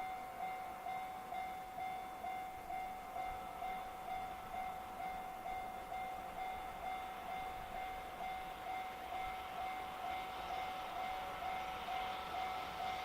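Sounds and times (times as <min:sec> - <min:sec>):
level crossing warning bell: 0:00.0 - 0:13.0
approaching train rushing: 0:02.7 - 0:13.0.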